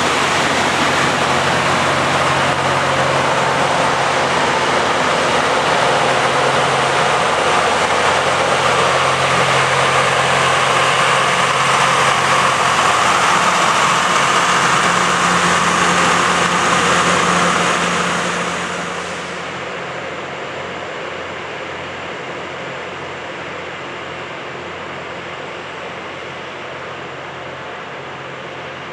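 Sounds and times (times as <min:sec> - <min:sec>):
rasping hiss of rail grinding: 0:00.0 - 0:19.6
diesel engines running: 0:00.0 - 0:28.9.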